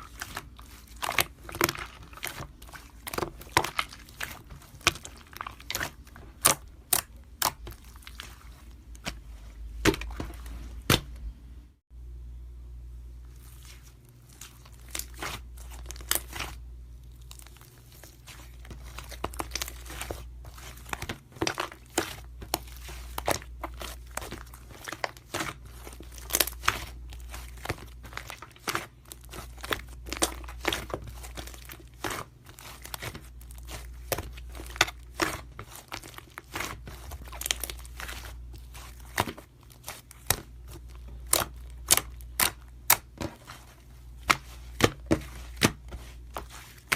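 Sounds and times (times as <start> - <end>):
slime crackling and popping: 0.0 - 9.2, 13.4 - 46.9
low steady hum: 0.0 - 46.9.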